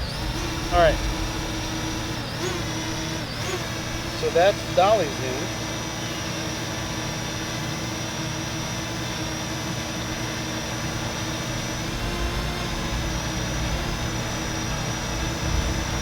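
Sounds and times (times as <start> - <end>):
low rumble: 0.0 - 4.3, 10.8 - 16.0
drone propellers humming: 0.0 - 16.0
high whine: 0.0 - 16.0.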